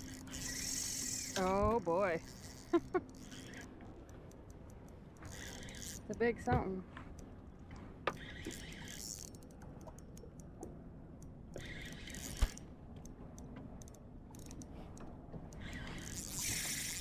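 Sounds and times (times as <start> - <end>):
fishing reel drag buzzing: 0.0 - 3.7, 5.2 - 6.1, 8.0 - 10.0, 11.5 - 12.7, 15.5 - 17.0.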